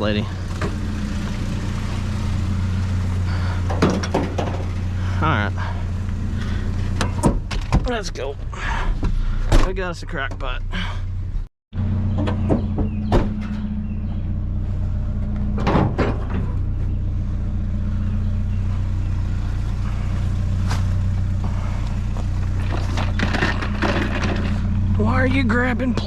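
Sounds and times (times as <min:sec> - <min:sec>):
vehicle engine running: 0:00.0 - 0:26.0
short knocks and rattles: 0:03.6 - 0:04.8, 0:12.1 - 0:13.7, 0:15.5 - 0:16.6, 0:22.5 - 0:24.7.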